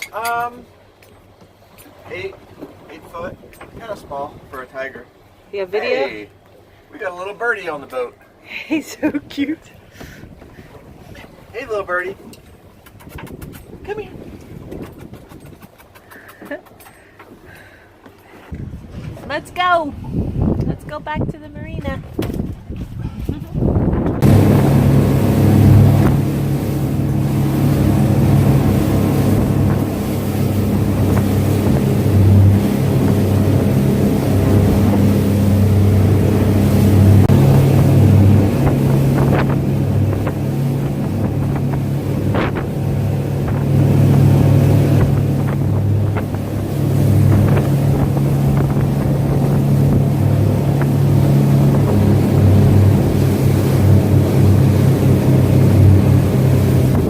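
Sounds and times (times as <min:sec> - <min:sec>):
motorboat engine running: 0:00.0 - 0:57.0
wind blowing on microphone: 0:12.1 - 0:15.8, 0:18.5 - 0:57.0.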